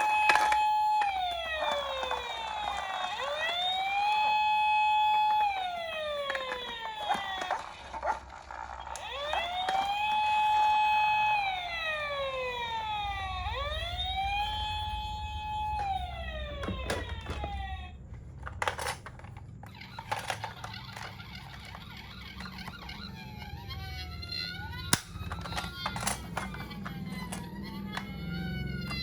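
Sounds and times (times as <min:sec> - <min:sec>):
toy ambulance siren wailing: 0:00.0 - 0:29.0
clicks and knocks: 0:16.6 - 0:17.6, 0:18.3 - 0:22.9, 0:24.9 - 0:28.1.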